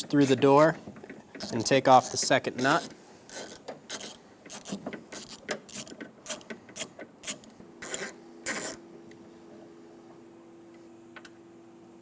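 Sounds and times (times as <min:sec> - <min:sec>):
ratchet rasps: 0:01.4 - 0:08.8
ratchet wrench clicking: 0:03.3 - 0:08.1.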